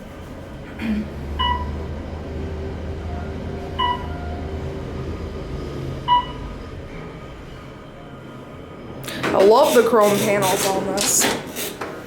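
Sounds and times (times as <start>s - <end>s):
elevator ride rumble: 0.0s - 12.0s
short electronic beeps: 1.4s - 1.8s, 3.8s - 4.4s, 6.0s - 6.4s.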